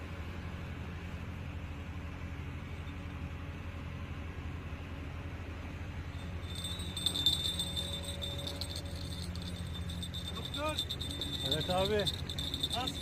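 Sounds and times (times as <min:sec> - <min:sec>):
steady low hum: 0:05.6 - 0:13.0
fishing rod bell jingling: 0:06.2 - 0:13.0.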